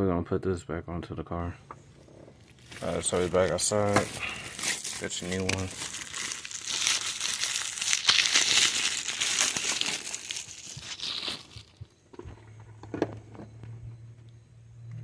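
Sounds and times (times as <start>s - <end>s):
low steady hum: 0.8s - 15.0s
plastic packaging crinkling: 2.1s - 12.0s.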